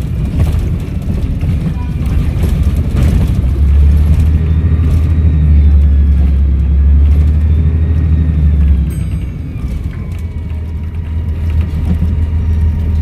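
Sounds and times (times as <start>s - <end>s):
bus diesel engine drone: 0.0s - 13.0s.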